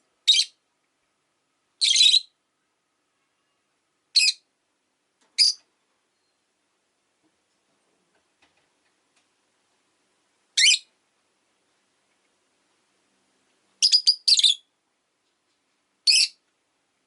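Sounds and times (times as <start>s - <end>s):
lovebird shrill calls: 1.8s - 2.3s, 4.2s - 4.4s, 10.6s - 10.9s, 13.8s - 14.7s, 16.0s - 16.4s.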